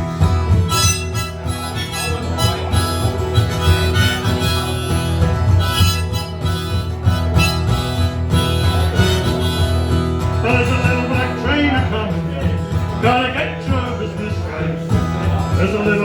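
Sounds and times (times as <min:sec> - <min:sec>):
harmonica melody: 0:00.0 - 0:11.4
strummed guitar: 0:00.0 - 0:16.0.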